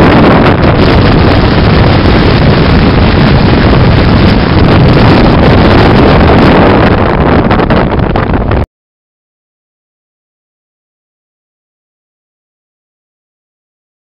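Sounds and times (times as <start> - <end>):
wind buffeting microphone: 0.0 - 8.7.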